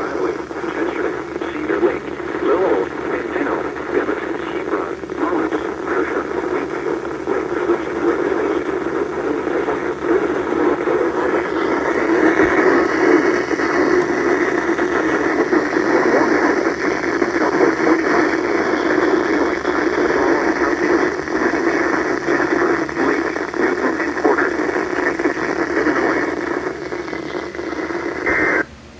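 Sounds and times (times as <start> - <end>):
radio static hiss: 0.0 - 28.7.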